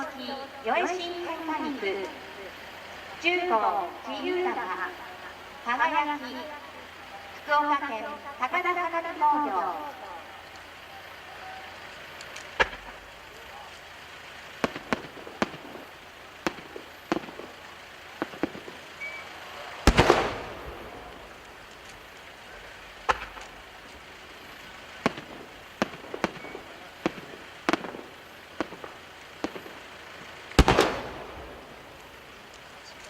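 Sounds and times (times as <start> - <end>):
firework cracks and pops: 10.4 - 33.0
firework booms with rolling echo: 12.5 - 32.9.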